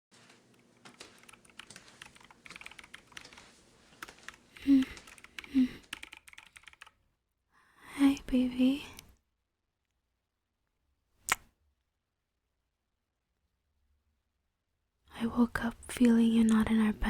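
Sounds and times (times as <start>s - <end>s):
keyboard typing: 0.5s - 7.0s
woman humming: 4.6s - 6.0s.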